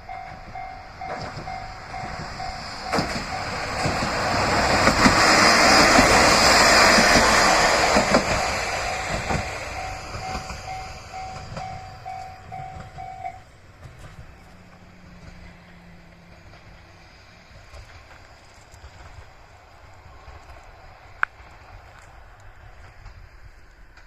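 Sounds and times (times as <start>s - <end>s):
crossing warning bell dinging: 0.0s - 6.5s, 8.0s - 13.6s
diesel railcar passing: 0.0s - 24.0s.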